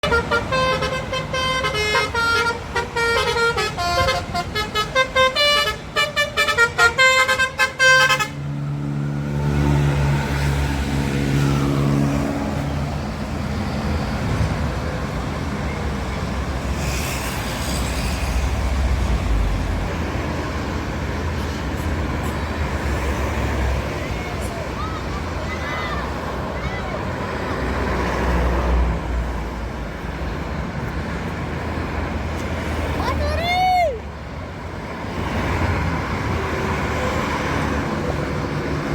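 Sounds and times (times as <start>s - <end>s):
multi-tone bus horn tune: 0.0s - 8.6s
bus engine droning: 0.0s - 38.9s
traffic rumble: 0.0s - 38.9s.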